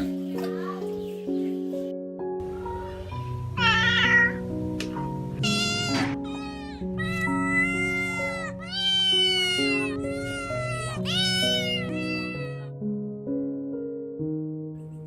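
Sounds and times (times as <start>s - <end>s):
background music: 0.0s - 15.0s
cat meowing: 3.6s - 4.4s, 5.4s - 12.7s.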